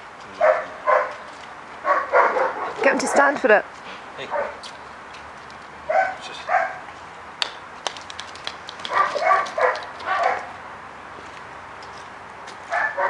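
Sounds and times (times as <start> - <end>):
dog barking: 0.4 - 1.2, 1.8 - 3.0, 4.3 - 4.6, 5.9 - 6.9, 8.9 - 10.6, 12.7 - 13.0
sharp clicks: 7.4 - 10.1.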